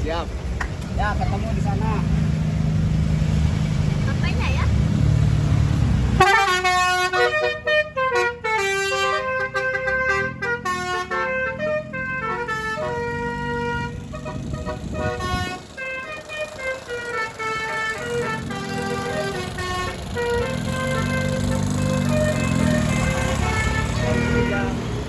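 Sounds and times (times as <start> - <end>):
bus horn playing a tune: 6.1 - 25.0.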